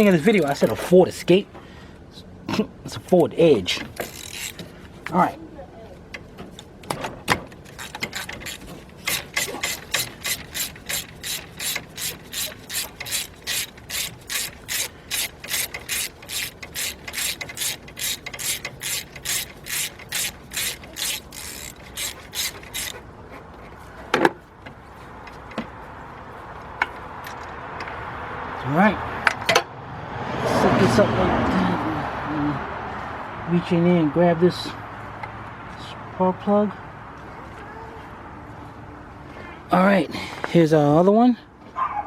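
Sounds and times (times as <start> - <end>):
socket ratchet clicking: 7.5 - 23.0.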